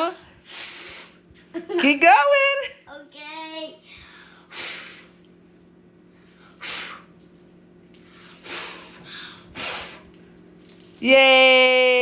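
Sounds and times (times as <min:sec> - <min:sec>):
puffs of breath blowing: 0:00.4 - 0:01.2, 0:03.9 - 0:05.2, 0:06.3 - 0:07.1, 0:08.1 - 0:10.1.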